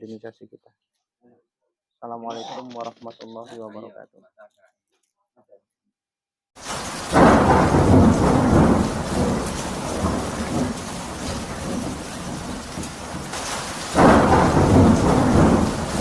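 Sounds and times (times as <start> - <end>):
rolling thunder: 6.6 - 16.0
steady rain: 6.6 - 16.0.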